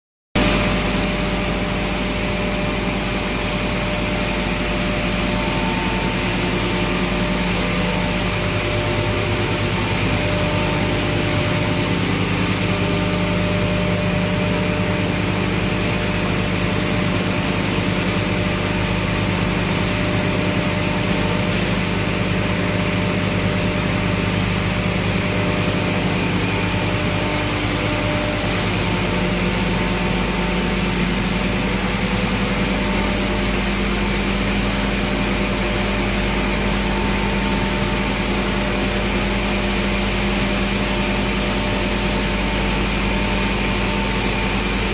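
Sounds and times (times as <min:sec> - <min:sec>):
industrial machinery drone: 0:00.4 - 0:44.9.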